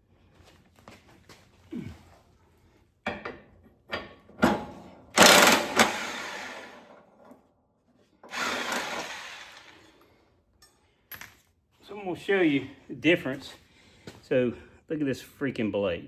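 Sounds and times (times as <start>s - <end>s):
impact wrench hammering: 5.2s - 6.7s, 8.3s - 9.8s.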